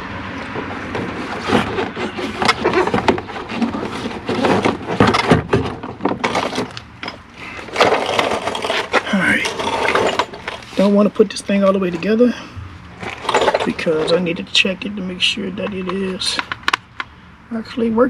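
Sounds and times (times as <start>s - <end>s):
door parts clicking and rattling: 1.7s - 10.8s, 12.9s - 14.4s.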